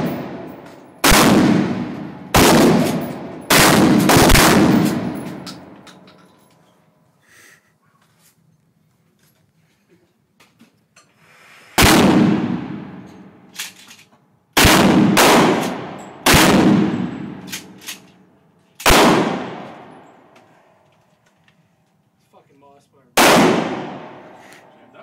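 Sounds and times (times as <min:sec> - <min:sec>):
echoing gunshots: 0:00.0 - 0:05.8, 0:11.8 - 0:13.4, 0:14.6 - 0:17.8, 0:18.8 - 0:20.0, 0:23.2 - 0:24.4.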